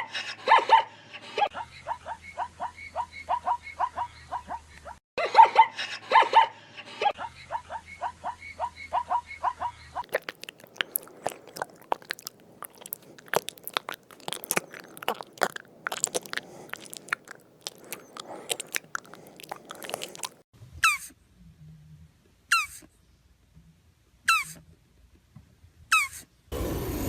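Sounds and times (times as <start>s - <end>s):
animal crunching food: 10.0s - 20.4s.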